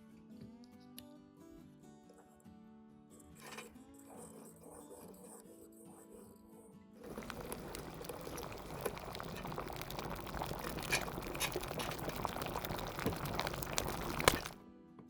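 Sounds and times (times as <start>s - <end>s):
liquid bubbling and crackling: 7.0s - 14.6s
small pops: 7.0s - 14.6s.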